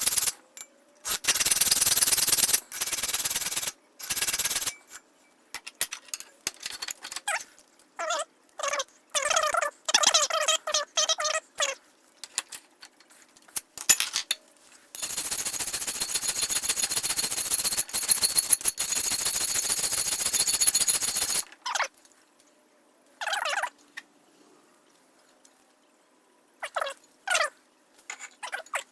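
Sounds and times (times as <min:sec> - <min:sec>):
metal tool rasping on steel: 0:15.0 - 0:19.3.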